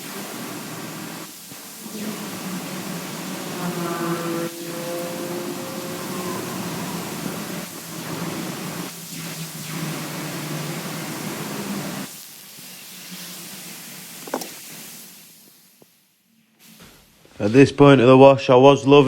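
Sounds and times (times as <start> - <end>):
heavy rain hissing: 0.0 - 15.8.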